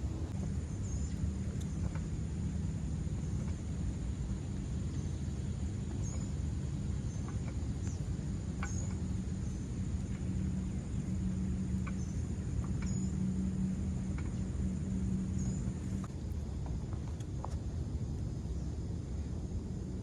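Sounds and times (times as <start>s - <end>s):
low outdoor rumble: 0.0s - 20.0s.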